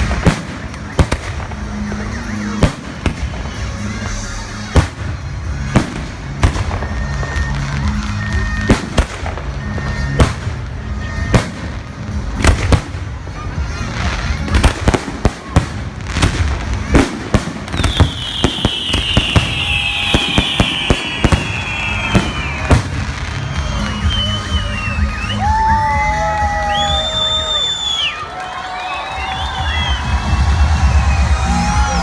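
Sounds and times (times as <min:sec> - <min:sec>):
fireworks bangs: 0:00.0 - 0:28.1
high falling whistle: 0:17.9 - 0:28.2.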